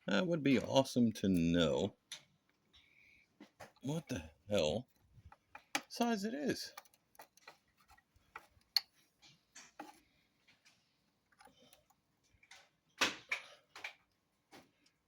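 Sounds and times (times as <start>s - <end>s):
tools rattling and scraping: 6.6s - 12.8s.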